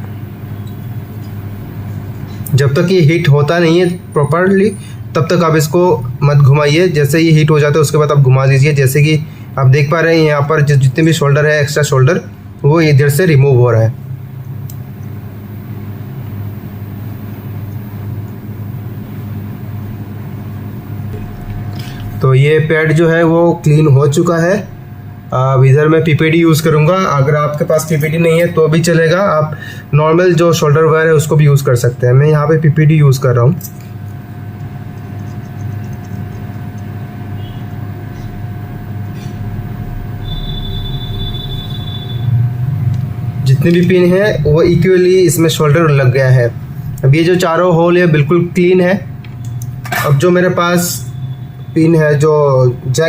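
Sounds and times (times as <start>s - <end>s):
hot-air station fan humming: 0.0s - 53.0s
thin high whine: 14.9s - 31.8s, 32.5s - 53.0s.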